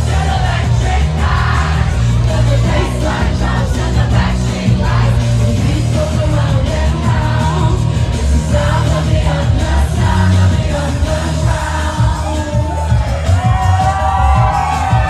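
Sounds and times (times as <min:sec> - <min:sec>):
live band with heavy bass beat: 0:00.0 - 0:15.0
woman singing: 0:02.3 - 0:13.2.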